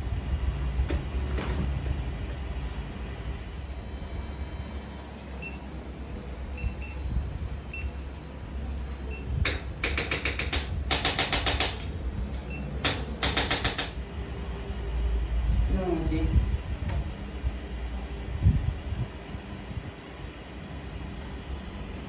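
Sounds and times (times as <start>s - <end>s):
steady low hum: 0.0s - 22.0s
rapid clicking: 9.8s - 11.9s, 12.8s - 14.0s.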